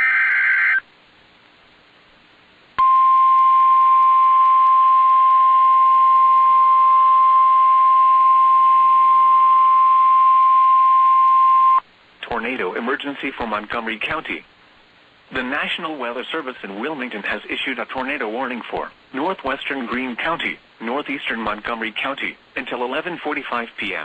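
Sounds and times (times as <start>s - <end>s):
steady single-pitch alarm tone: 2.8s - 11.8s.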